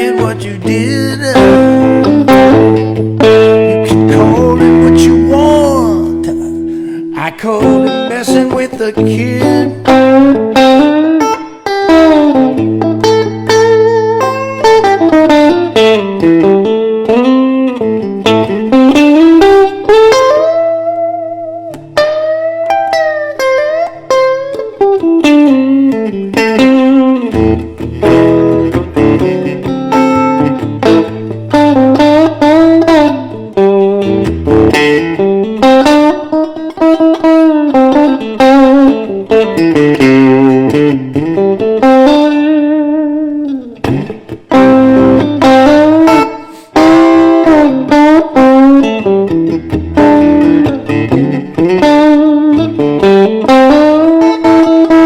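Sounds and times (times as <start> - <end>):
sustained low guitar notes: 0.0 - 10.8
electric guitar blues solo: 0.0 - 55.0.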